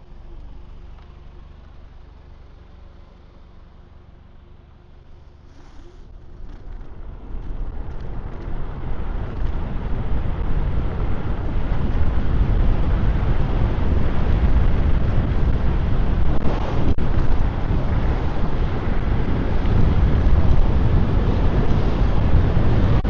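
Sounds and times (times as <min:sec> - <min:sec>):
wind rushing over microphone: 0:05.6 - 0:23.0.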